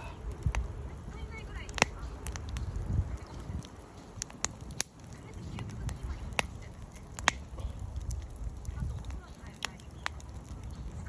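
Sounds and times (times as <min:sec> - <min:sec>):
low uneven rumble: 0:00.0 - 0:11.0
wood fire popping: 0:00.0 - 0:11.0.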